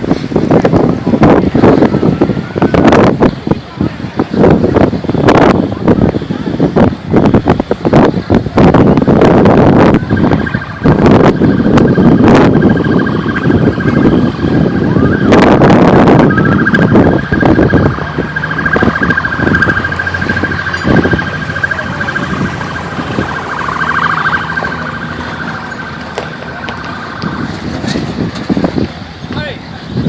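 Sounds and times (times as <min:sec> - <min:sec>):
wind buffeting microphone: 0:00.0 - 0:30.0
electronic alarm pulsing tone: 0:09.7 - 0:28.2.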